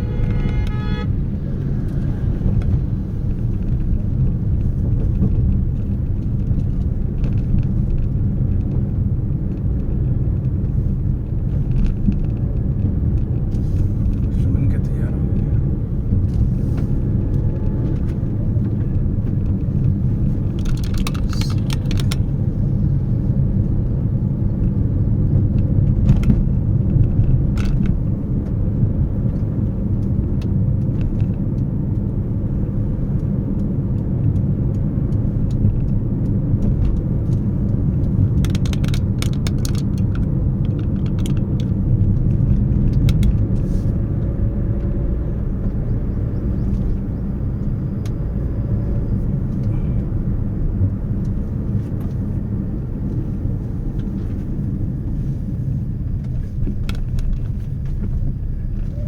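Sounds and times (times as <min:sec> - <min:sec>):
car rumbling on the move: 0:00.0 - 0:59.0.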